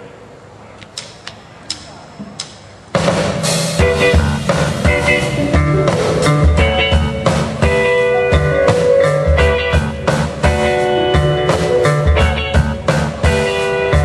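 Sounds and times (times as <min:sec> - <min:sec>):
bass: 0:00.0 - 0:14.0
drum beat: 0:03.0 - 0:14.0
guitar chords: 0:03.0 - 0:14.0.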